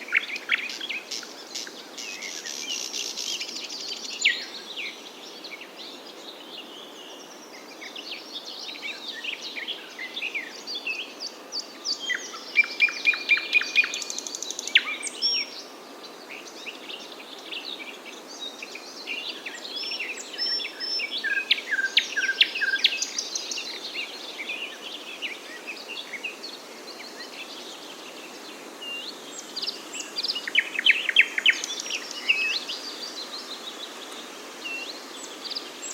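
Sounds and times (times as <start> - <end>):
songbirds chirping and trilling: 0.0 - 35.9
steady background hiss: 0.0 - 35.9.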